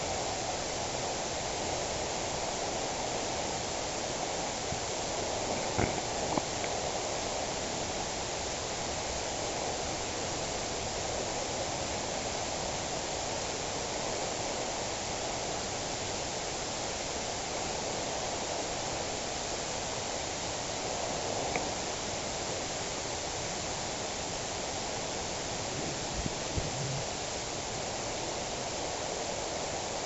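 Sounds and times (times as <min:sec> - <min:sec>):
steady rushing noise: 0:24.5 - 0:29.4.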